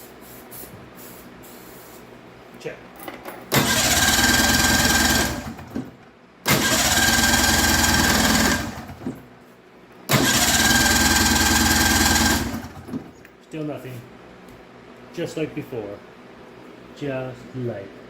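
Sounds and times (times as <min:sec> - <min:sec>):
engine cranking on starter: 0:03.5 - 0:09.2, 0:10.1 - 0:13.1.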